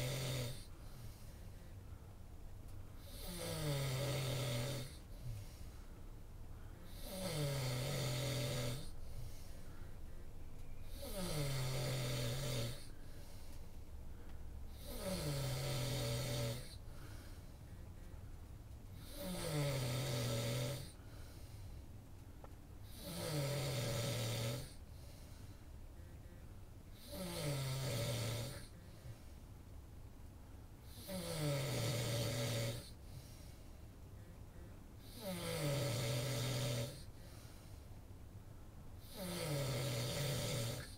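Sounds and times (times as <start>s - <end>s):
person snoring: 0.0s - 1.3s, 3.0s - 5.5s, 6.8s - 9.4s, 10.9s - 12.9s, 14.7s - 17.3s, 19.0s - 21.3s, 22.8s - 24.8s, 26.9s - 28.8s, 30.8s - 33.0s, 35.0s - 37.4s, 39.0s - 40.9s
quiet breathing: 0.0s - 40.9s.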